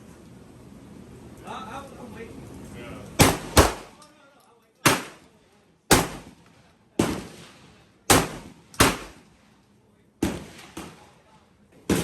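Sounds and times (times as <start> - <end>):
gunshots with echo: 3.2 - 3.9, 4.9 - 5.2, 5.9 - 6.3, 8.1 - 9.2.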